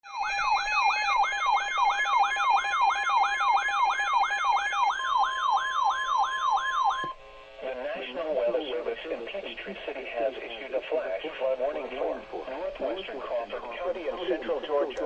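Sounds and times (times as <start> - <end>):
electronic siren falling: 0.1 - 7.2
voice over radio: 7.6 - 15.0.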